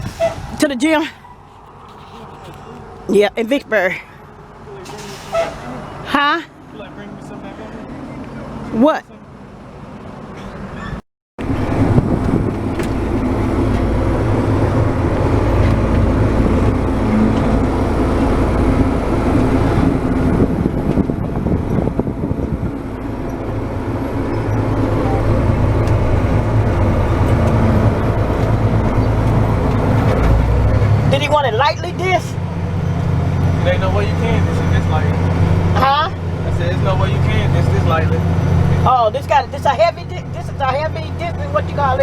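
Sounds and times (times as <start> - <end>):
vehicle engine running: 11.4 - 42.0.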